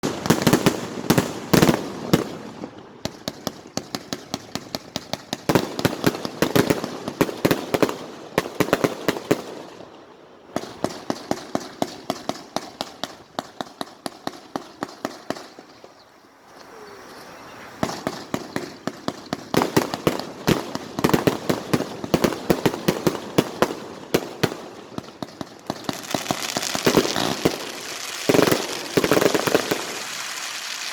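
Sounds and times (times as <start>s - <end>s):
fireworks crackling: 0.0s - 16.0s, 16.6s - 30.9s
loud firework hiss: 25.6s - 30.9s.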